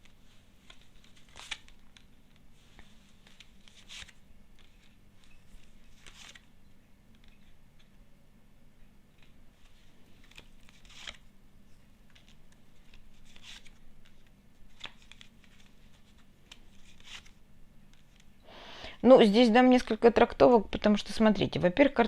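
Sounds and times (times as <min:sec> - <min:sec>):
cards being shuffled: 0:00.0 - 0:07.9, 0:09.1 - 0:11.3, 0:12.0 - 0:18.3.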